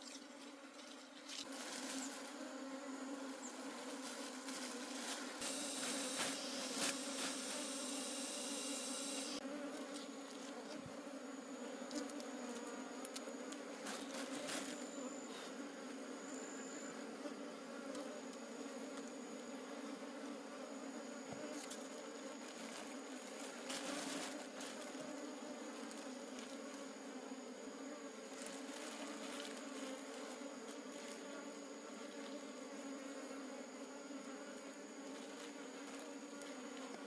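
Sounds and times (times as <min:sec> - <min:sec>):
honeybees buzzing: 0:00.2 - 0:37.0
high hiss: 0:05.4 - 0:09.4.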